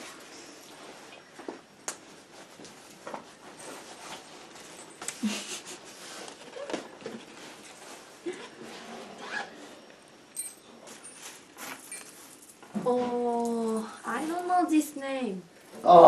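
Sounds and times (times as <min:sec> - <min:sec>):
rustling: 0:00.0 - 0:09.8.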